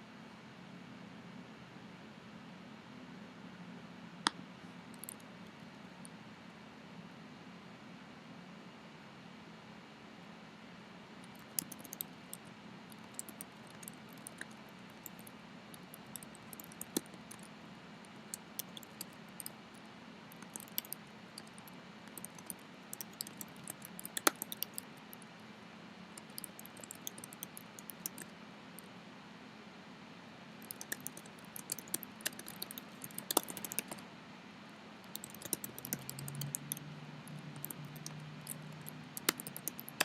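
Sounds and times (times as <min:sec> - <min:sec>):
keyboard key clicks: 0:11.3 - 0:12.1, 0:20.4 - 0:24.8, 0:26.2 - 0:28.2, 0:30.6 - 0:34.0, 0:35.1 - 0:40.0.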